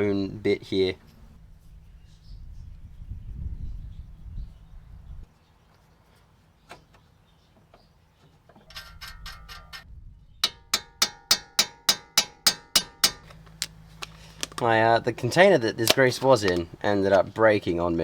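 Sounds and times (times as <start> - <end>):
ratchet wrench clicking: 10.4 - 13.3.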